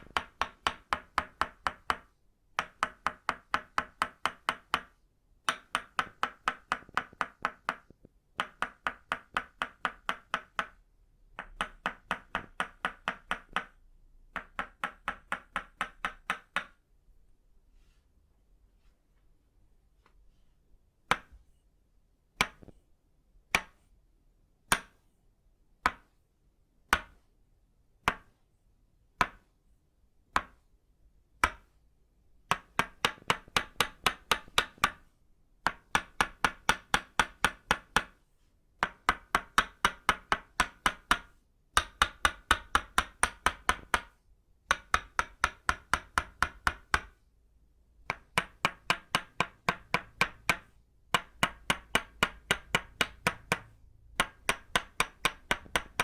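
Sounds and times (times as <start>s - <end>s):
mallet striking wooden peg: 24.7s - 25.0s, 31.4s - 31.7s, 38.8s - 47.2s, 48.0s - 56.0s.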